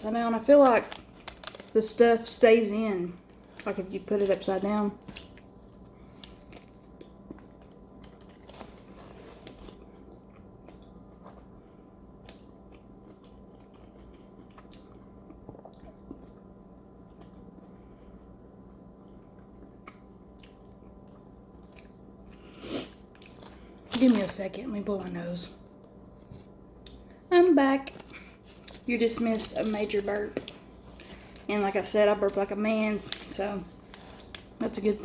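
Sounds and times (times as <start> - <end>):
faint low hum: 0.0 - 35.0
person chewing food: 5.0 - 23.9, 27.9 - 28.9.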